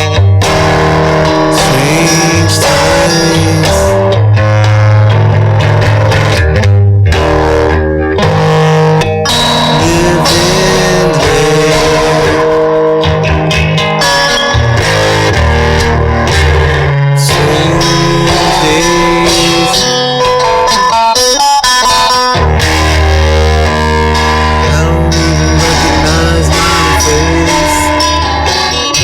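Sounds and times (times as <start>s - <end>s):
bass guitar: 0.0s - 29.0s
electric guitar rock music: 0.0s - 29.0s.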